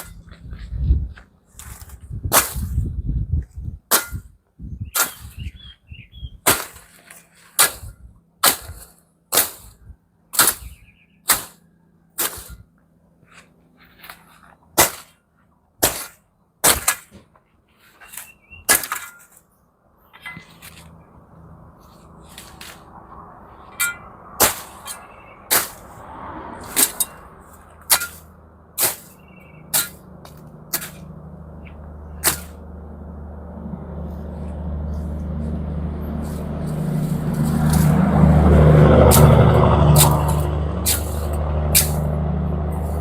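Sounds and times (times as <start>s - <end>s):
machete chopping weeds: 1.6s - 2.9s, 3.9s - 4.3s, 5.0s - 5.4s, 6.5s - 9.8s, 10.4s - 11.6s, 12.2s - 12.6s, 14.8s - 15.2s, 15.8s - 17.2s, 18.1s - 19.4s, 23.8s - 26.0s, 26.6s - 31.1s, 32.2s - 32.6s, 36.0s - 43.0s.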